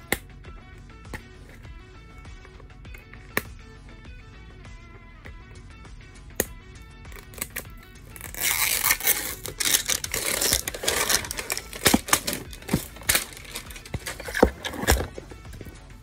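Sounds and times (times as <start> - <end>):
plastic packaging crinkling and tearing: 7.2 - 15.2.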